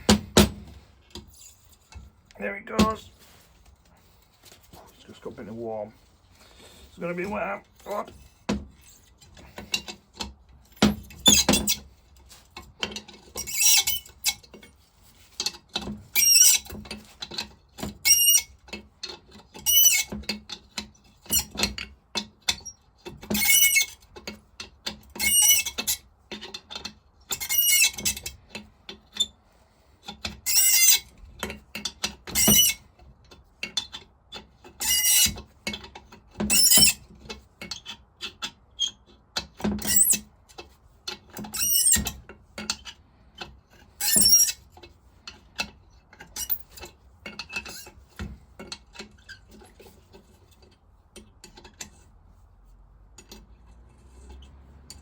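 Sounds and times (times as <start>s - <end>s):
rusty nut squealing on thread: 11.1s - 11.9s, 13.4s - 14.4s, 16.1s - 16.8s, 18.0s - 18.6s, 19.6s - 20.1s, 22.5s - 24.0s, 25.2s - 26.0s, 27.3s - 28.3s, 30.4s - 31.1s, 32.3s - 32.9s, 34.8s - 35.4s, 36.5s - 37.1s, 39.8s - 40.3s, 41.4s - 42.9s, 43.9s - 44.7s, 46.2s - 48.2s.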